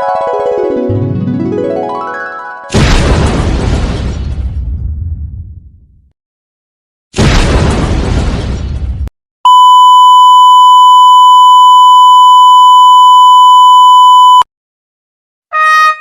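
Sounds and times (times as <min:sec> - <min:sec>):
explosion sound effect: 0:02.7 - 0:06.1, 0:07.2 - 0:09.1
censor beep tone: 0:09.5 - 0:14.5.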